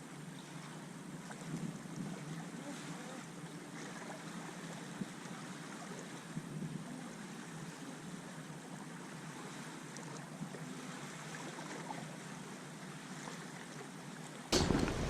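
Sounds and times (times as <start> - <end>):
sea water noise: 0.0 - 15.0
steady wind: 14.5 - 15.0.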